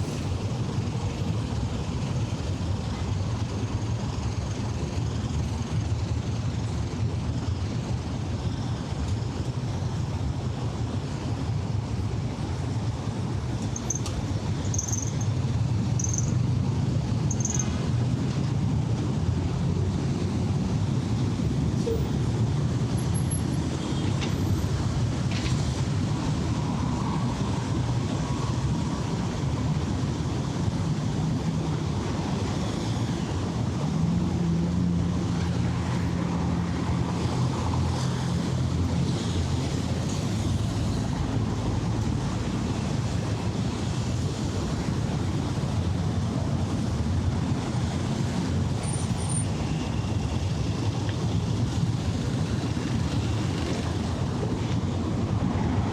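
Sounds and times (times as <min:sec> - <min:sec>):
traffic rumble: 0:00.0 - 0:55.9
vehicles passing: 0:00.0 - 0:55.9.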